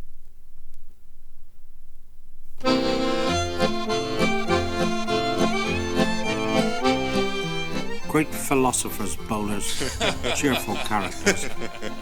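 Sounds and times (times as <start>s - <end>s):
accordion folk music: 2.6s - 12.0s.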